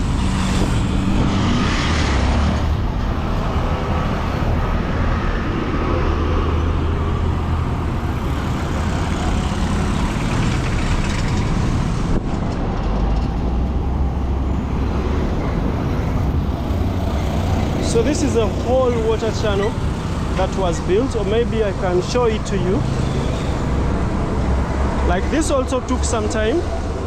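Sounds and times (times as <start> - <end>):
road traffic rumble: 0.0 - 27.0.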